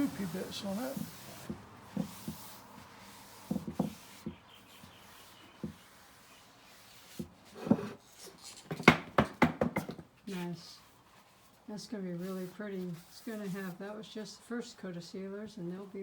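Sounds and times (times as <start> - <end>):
cloth wiping wood: 0.0 - 7.7, 10.3 - 13.8
knocks on wood: 3.5 - 4.4, 8.7 - 10.0.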